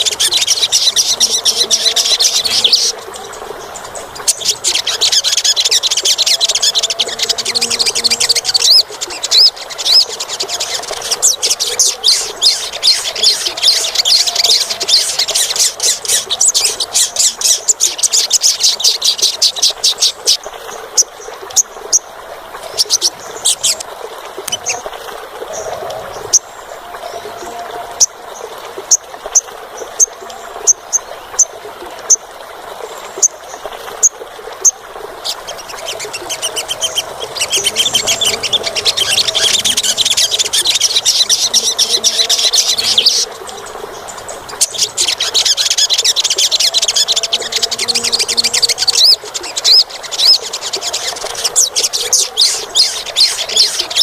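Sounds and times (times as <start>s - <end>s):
sunbird chipping calls: 0.0s - 20.4s, 34.6s - 43.3s
sunbird twittering song: 0.0s - 23.8s, 33.1s - 54.0s.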